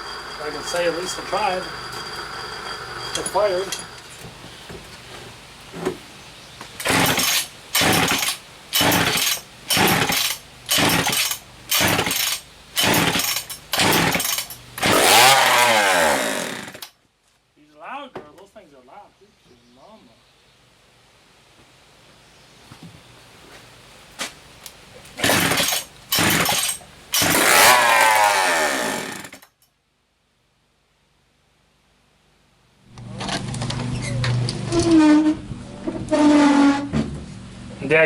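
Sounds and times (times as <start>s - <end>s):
chainsaw firing in bursts: 6.8s - 16.9s, 25.2s - 29.5s
soft handling knocks and rustles: 22.6s - 24.4s.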